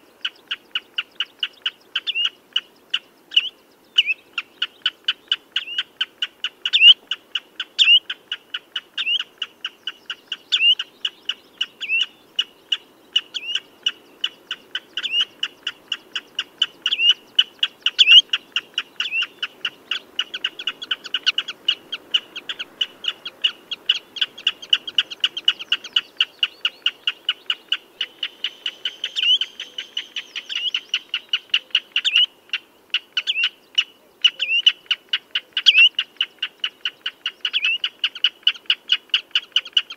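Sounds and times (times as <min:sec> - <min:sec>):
bird calling high piping notes: 0:09.0 - 0:39.9.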